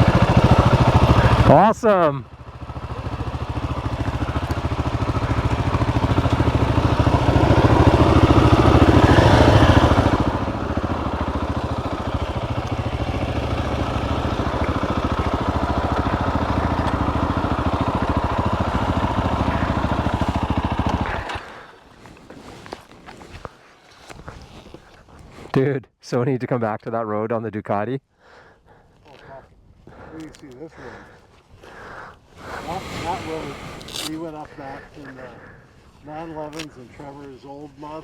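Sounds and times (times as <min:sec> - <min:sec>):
motorcycle engine running: 0:00.0 - 0:22.2.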